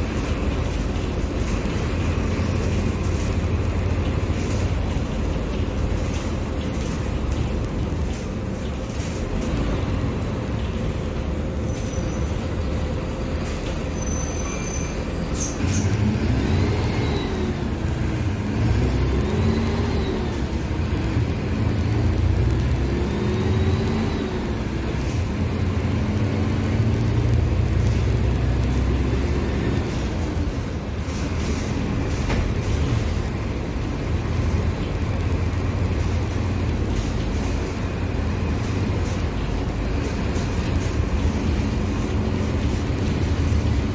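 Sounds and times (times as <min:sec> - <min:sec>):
bus engine accelerating: 0:00.0 - 0:43.9.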